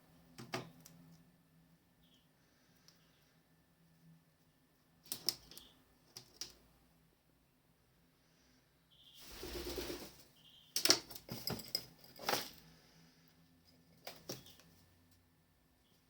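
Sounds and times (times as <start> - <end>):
bird wings flapping: 9.2 - 10.2.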